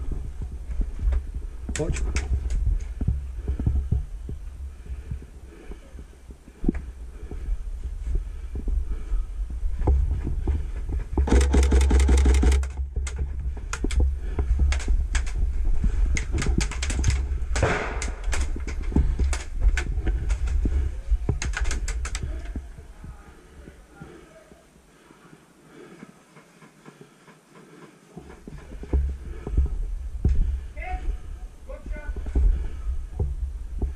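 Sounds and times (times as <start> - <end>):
airsoft gun firing bursts: 11.2 - 12.8.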